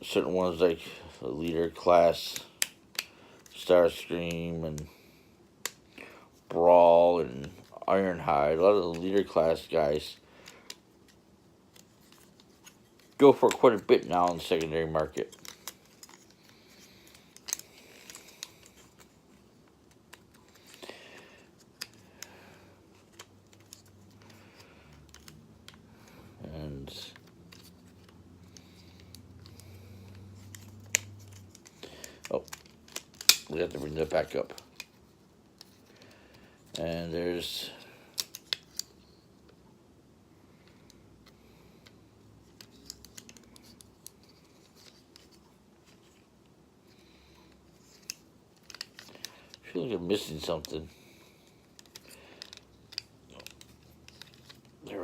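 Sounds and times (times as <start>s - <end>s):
plastic toy parts clicking: 13.0s - 19.1s, 30.4s - 33.8s, 38.1s - 39.0s, 47.8s - 49.6s, 51.7s - 54.6s.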